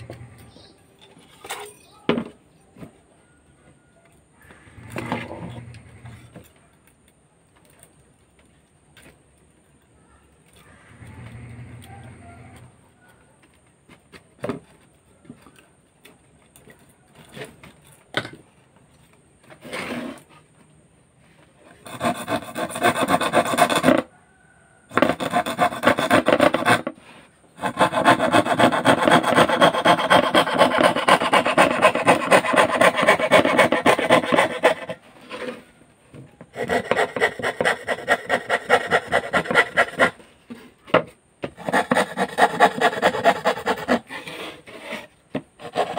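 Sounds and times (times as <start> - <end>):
saw cutting plywood: 4.7 - 6.3, 21.7 - 24.1, 24.9 - 27.0, 27.6 - 35.6, 36.5 - 40.2, 41.4 - 45.9.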